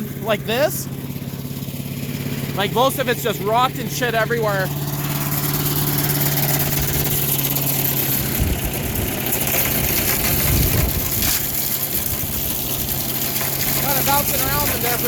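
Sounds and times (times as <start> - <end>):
chipper shredder engine running: 0.0 - 15.0
sticks being shredded: 5.0 - 15.0.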